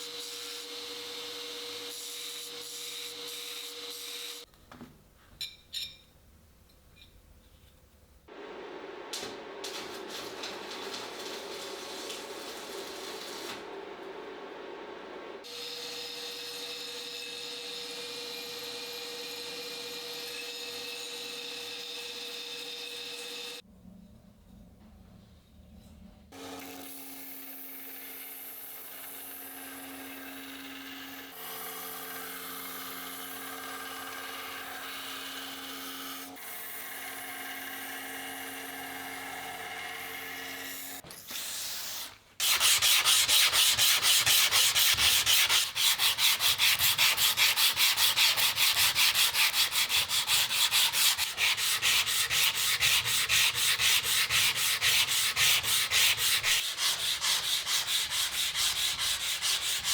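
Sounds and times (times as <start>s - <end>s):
hand-sanding knife blade: 41.3s - 59.9s.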